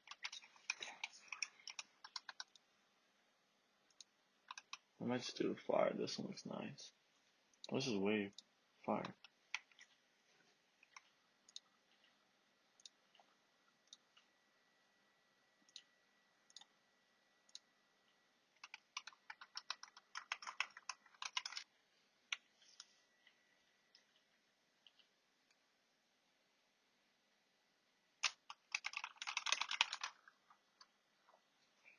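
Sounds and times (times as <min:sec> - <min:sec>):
keyboard keystrokes: 0:18.6 - 0:21.6, 0:28.2 - 0:30.3.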